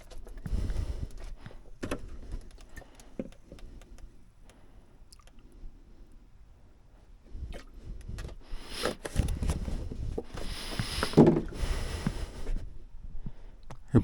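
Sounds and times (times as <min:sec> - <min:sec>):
hands scraping and knocking parts: 0:08.2 - 0:11.6.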